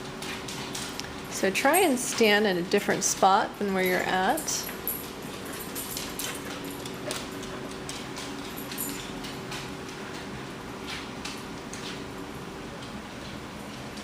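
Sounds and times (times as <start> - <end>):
dog nails clicking on hard floor: 0.2 - 3.2, 3.9 - 12.0.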